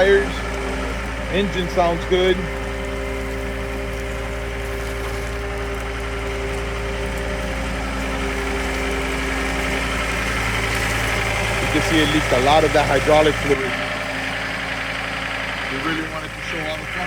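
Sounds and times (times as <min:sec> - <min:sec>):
diesel engine idling: 0:00.0 - 0:17.0.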